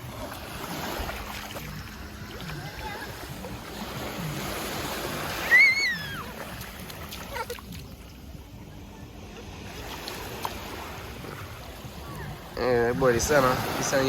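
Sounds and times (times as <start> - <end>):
waves washing up beach: 0.0 - 14.0
child squealing: 5.4 - 6.4.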